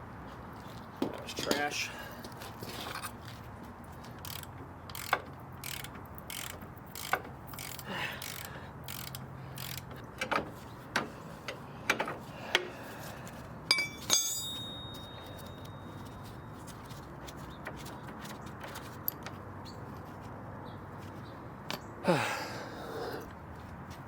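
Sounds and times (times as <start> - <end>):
hand tools clicking on metal: 4.2 - 10.4, 13.7 - 15.8
metal clanks: 13.7 - 16.0.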